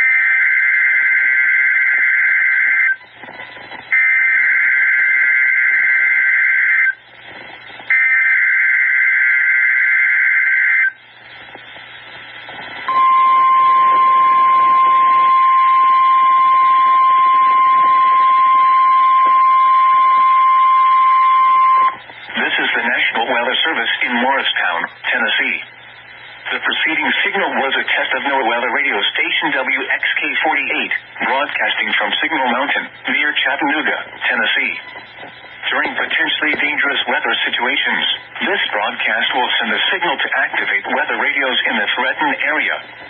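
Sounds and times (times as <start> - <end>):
steady warning alarm tone: 0.0 - 3.0, 3.9 - 7.0, 7.9 - 11.0, 12.9 - 23.7.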